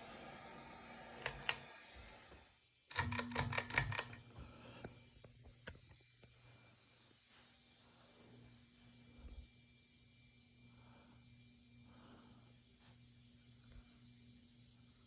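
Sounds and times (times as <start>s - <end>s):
sharp clicks: 2.9s - 4.2s.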